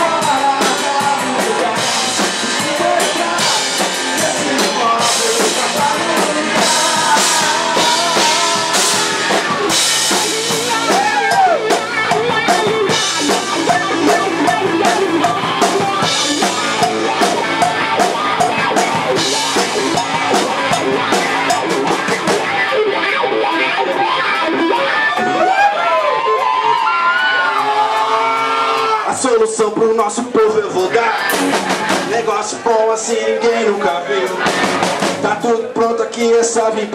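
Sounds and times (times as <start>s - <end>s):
rock band playing instrumental: 0.0s - 36.8s.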